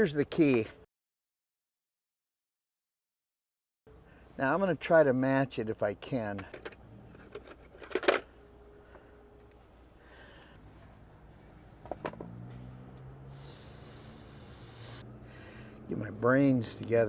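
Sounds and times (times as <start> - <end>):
metal tools clattering: 6.4 - 8.3.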